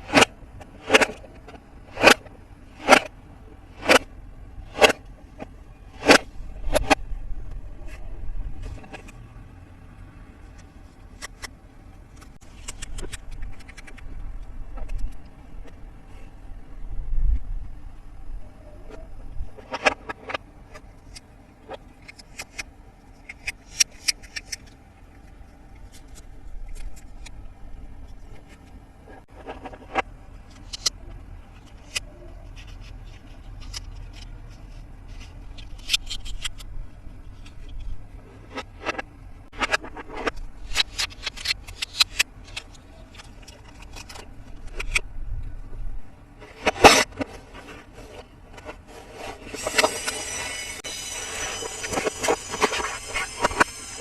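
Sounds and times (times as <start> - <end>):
low background rumble: 0.0 - 49.5.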